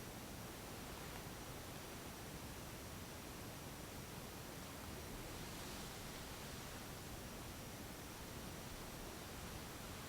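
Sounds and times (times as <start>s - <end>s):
faint background hiss: 0.0s - 10.0s.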